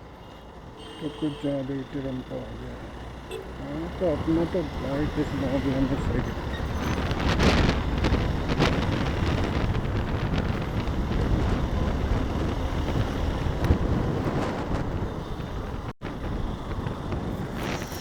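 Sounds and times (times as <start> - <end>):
motorcycle engine rumble: 0.0 - 18.0
wind buffeting microphone: 3.8 - 18.0.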